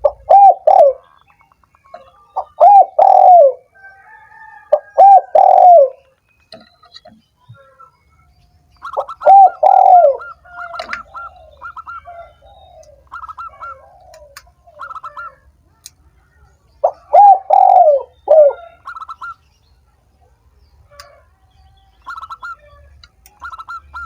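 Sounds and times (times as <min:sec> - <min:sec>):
dove cooing: 0:00.0 - 0:01.2, 0:01.9 - 0:06.0, 0:08.8 - 0:15.5, 0:16.8 - 0:19.4.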